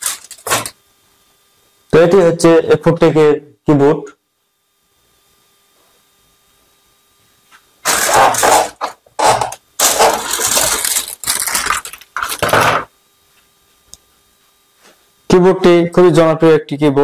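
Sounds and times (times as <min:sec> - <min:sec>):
plastic bag crinkling: 0:00.0 - 0:00.8, 0:07.8 - 0:12.5.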